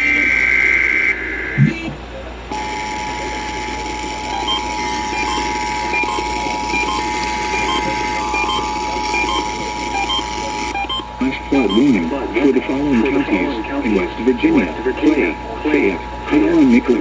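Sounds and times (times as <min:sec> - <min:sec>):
radio hiss: 0:00.0 - 0:04.1, 0:04.8 - 0:17.0
two-tone alert signal: 0:01.6 - 0:02.0.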